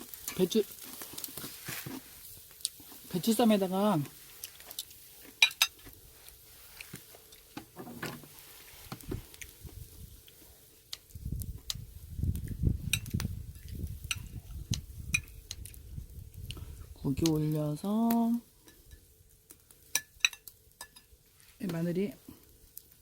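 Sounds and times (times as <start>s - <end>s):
muffled handling noise: 4.0s - 15.8s.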